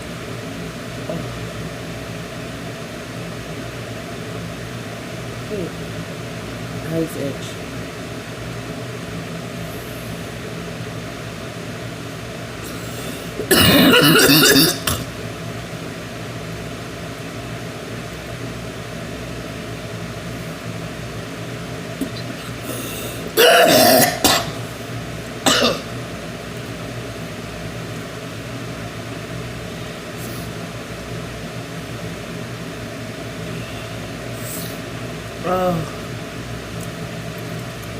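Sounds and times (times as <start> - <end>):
woman coughing: 13.4 - 15.1, 23.4 - 24.6, 25.4 - 25.9.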